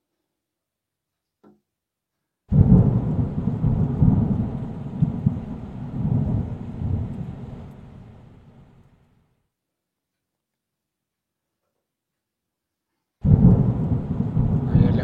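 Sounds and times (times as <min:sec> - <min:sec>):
storm wind buffeting microphone: 0:02.5 - 0:08.8, 0:13.2 - 0:15.0.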